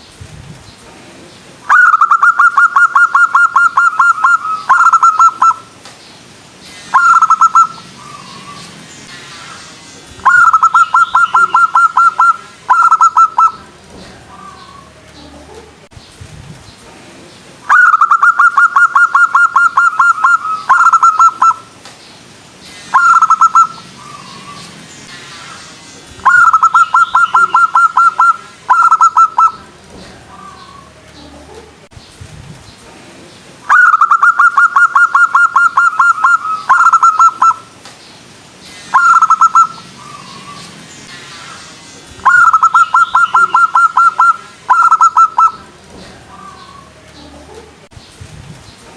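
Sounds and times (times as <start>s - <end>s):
dove cooing: 1.7s - 5.6s, 6.9s - 8.6s, 10.2s - 13.6s, 17.7s - 21.6s, 22.9s - 24.6s, 26.2s - 29.6s, 33.7s - 37.6s, 42.2s - 45.6s.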